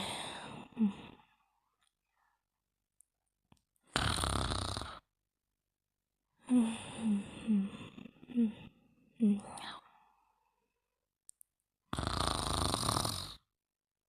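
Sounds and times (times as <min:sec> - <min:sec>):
person snoring: 0:03.9 - 0:05.1, 0:11.9 - 0:13.5.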